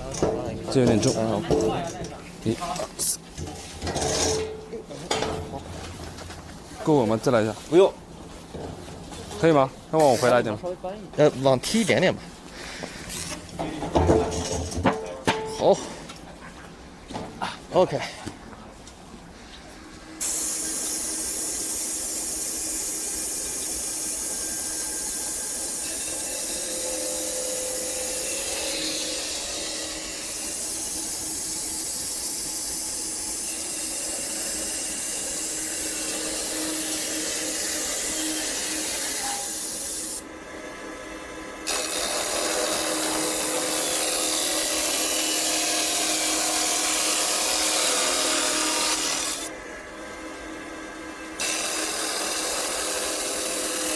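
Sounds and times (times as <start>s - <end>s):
angle grinder grinding steel: 0.0s - 5.6s, 20.2s - 40.2s, 41.7s - 49.5s, 51.4s - 53.9s.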